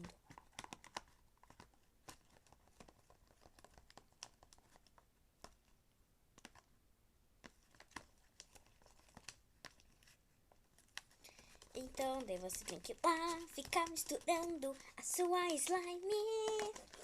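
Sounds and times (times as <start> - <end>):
plastic bottle and bowl clicking: 11.0 - 17.0.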